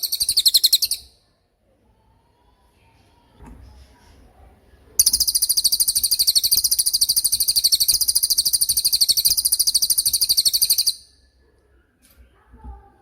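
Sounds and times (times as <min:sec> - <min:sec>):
songbird high-pitched trill: 0:00.0 - 0:01.2, 0:05.0 - 0:11.2.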